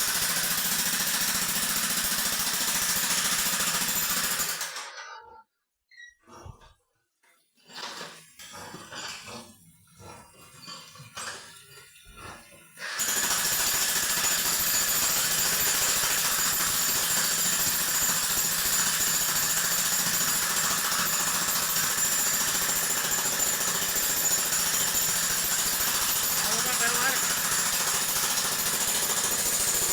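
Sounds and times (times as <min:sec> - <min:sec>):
electric jackhammer pounding: 0:00.0 - 0:04.9, 0:13.0 - 0:29.9.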